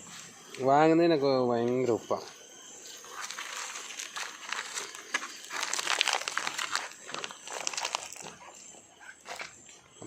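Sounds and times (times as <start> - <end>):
crisp crinkling and crackling: 2.9 - 9.6.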